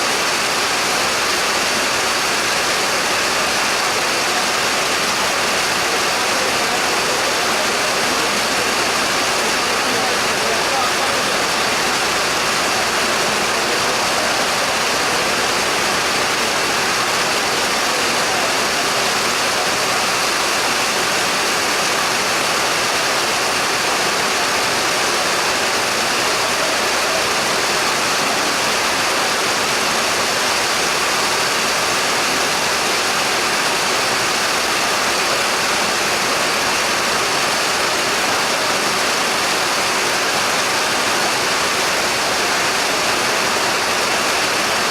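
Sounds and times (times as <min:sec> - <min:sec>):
heavy rain pouring: 0:00.0 - 0:44.9.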